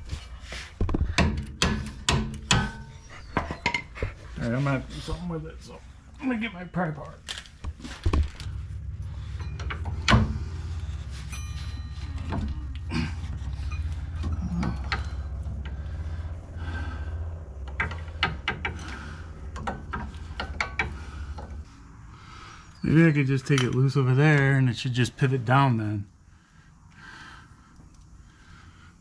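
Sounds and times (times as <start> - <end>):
steady low hum: 0.0 - 29.0
ringing metallic clink: 8.5 - 15.8.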